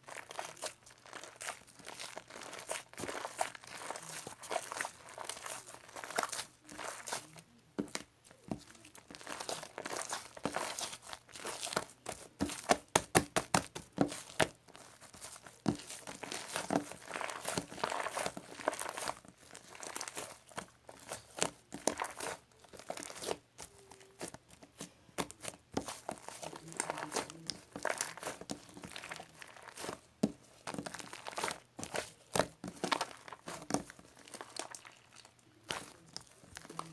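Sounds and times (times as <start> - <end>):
crinkling and rustling: 0.0 - 36.9.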